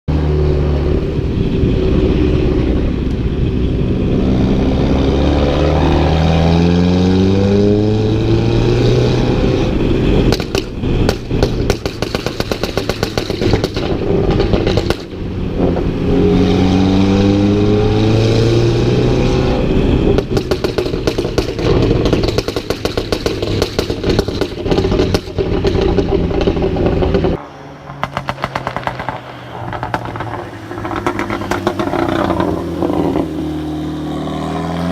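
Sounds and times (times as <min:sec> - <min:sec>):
car engine revving: 0:00.1 - 0:34.9
exhaust crackles and pops: 0:10.2 - 0:16.1, 0:20.0 - 0:33.5.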